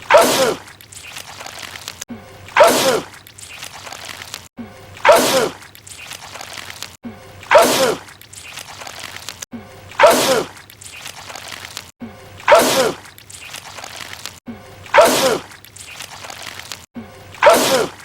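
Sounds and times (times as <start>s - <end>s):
man sneezing: 17.4s - 18.0s.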